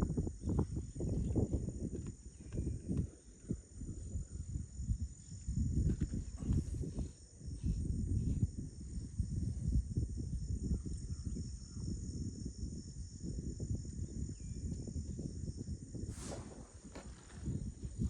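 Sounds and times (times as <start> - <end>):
insects droning: 0.0 - 18.0
low uneven rumble: 16.1 - 18.0.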